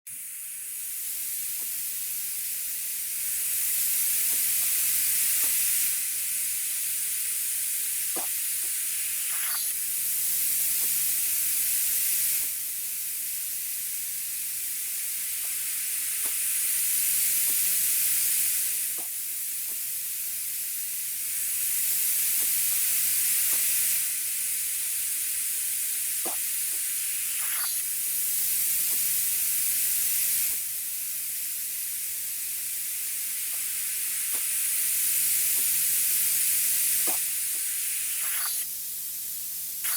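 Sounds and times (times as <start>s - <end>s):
iguana hissing: 8.2s - 9.8s, 26.3s - 27.9s, 37.0s - 38.6s.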